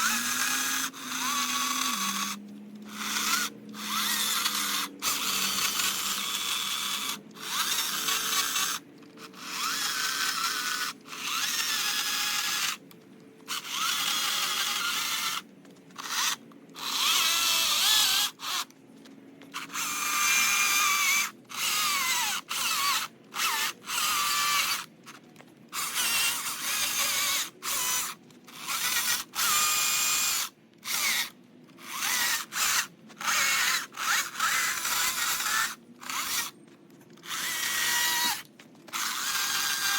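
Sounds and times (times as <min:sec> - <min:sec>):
high-pitched power tool cutting wood: 0:00.0 - 0:12.8, 0:13.5 - 0:15.4, 0:16.0 - 0:18.7, 0:19.6 - 0:24.9, 0:25.7 - 0:36.6, 0:37.2 - 0:39.9.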